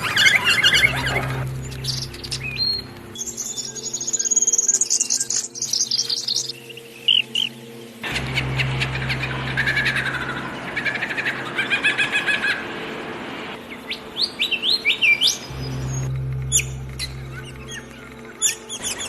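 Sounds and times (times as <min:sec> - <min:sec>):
low hum: 0:00.0 - 0:03.5, 0:08.0 - 0:11.6, 0:15.3 - 0:19.0
songbirds chirping: 0:00.0 - 0:19.0.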